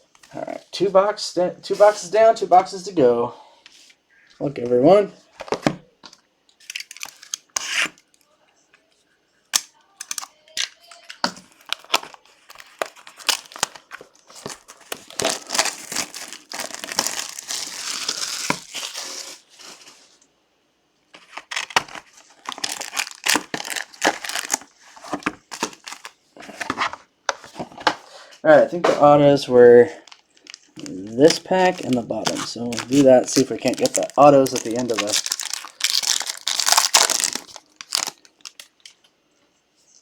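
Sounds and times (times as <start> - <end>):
plastic wrapping crinkling and tearing: 6.6 - 8.3, 9.5 - 20.2, 21.2 - 27.6, 29.9 - 39.1.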